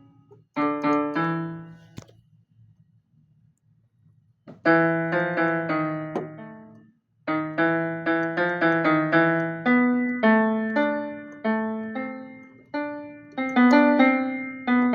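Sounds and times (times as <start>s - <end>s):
piano notes: 0.0s - 2.0s, 4.5s - 14.9s.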